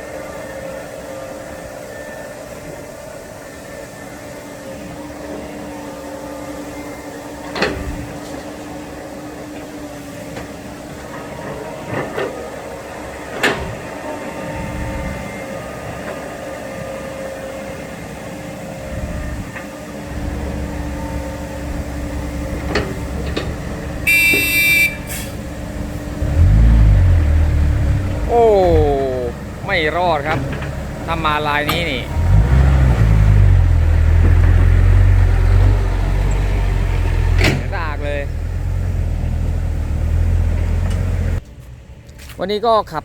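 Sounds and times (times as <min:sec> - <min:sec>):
truck engine rumbling: 0:18.9 - 0:43.0.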